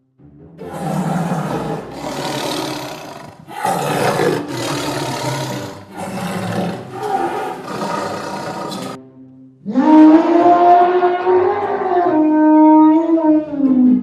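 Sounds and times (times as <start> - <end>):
big cat roaring: 0.7 - 9.0.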